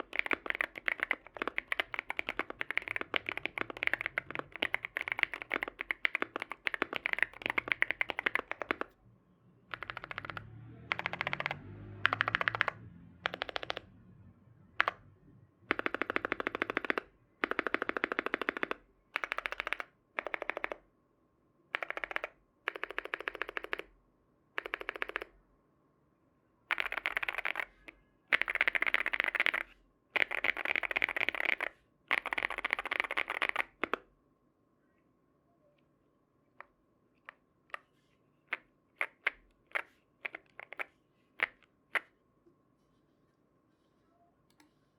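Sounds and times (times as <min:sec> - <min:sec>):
mechanical keyboard typing: 0:00.0 - 0:09.0, 0:09.7 - 0:13.9, 0:14.8 - 0:15.1, 0:15.7 - 0:20.8, 0:21.7 - 0:23.9, 0:24.6 - 0:25.3, 0:26.7 - 0:34.0, 0:38.5 - 0:41.6.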